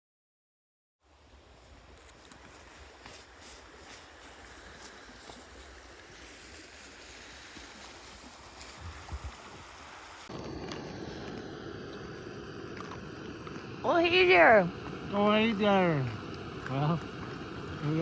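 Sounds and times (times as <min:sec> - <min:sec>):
river water rushing: 0:02.5 - 0:18.0
wind buffeting microphone: 0:08.1 - 0:18.0.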